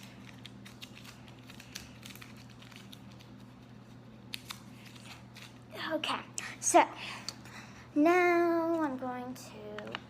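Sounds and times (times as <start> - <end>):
label being torn off: 4.2 - 5.6.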